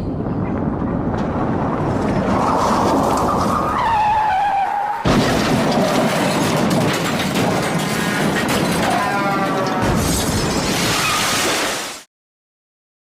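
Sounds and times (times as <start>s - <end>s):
noisy clatter: 0.0s - 4.0s, 5.0s - 11.0s
car tires screeching: 2.0s - 5.4s
loud crash: 5.0s - 9.2s, 9.8s - 12.1s.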